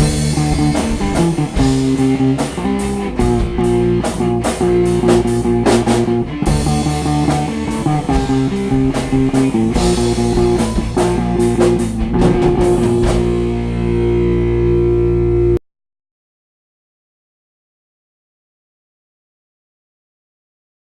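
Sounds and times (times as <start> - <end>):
held guitar chord ringing: 0.0 - 15.6
rock band playing: 0.0 - 15.6.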